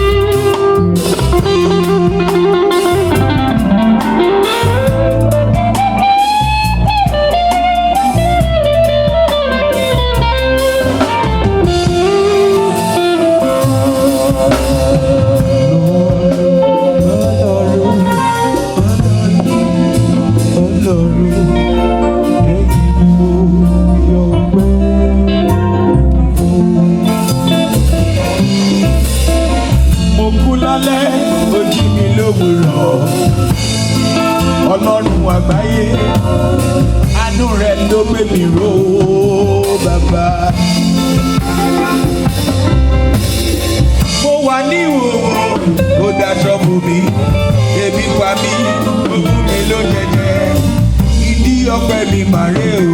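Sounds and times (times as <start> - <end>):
drum kit and percussion: 0.0 - 52.9
electric guitar lines: 0.0 - 52.9
people singing: 11.0 - 24.8, 28.0 - 42.7, 44.0 - 52.9.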